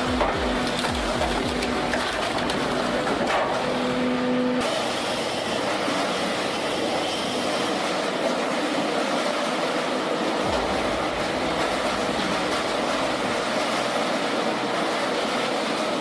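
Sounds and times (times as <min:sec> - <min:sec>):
firewood processor machine running: 0:00.0 - 0:16.0.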